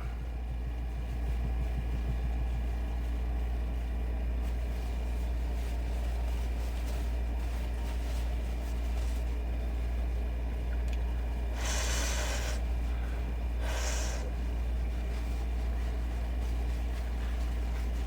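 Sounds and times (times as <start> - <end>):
steady low hum: 0.0 - 18.0
short airy hisses: 11.5 - 12.7, 13.6 - 14.4.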